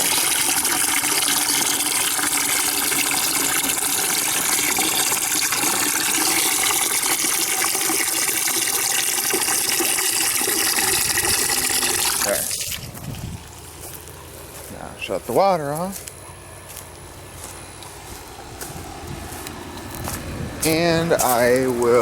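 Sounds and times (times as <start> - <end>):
water pouring into bucket: 0.0 - 13.9.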